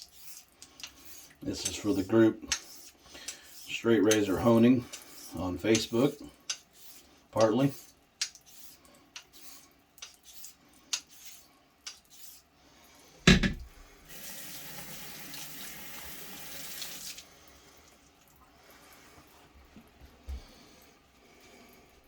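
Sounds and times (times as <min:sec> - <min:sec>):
loud knock: 0:13.3 - 0:13.7
water running: 0:13.3 - 0:18.4.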